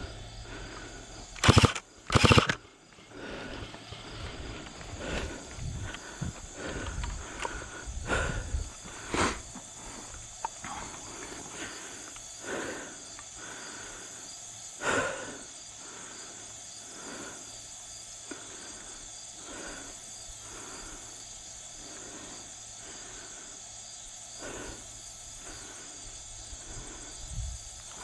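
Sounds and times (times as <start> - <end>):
insects chirping: 0.0 - 28.0
short noises: 1.2 - 11.7.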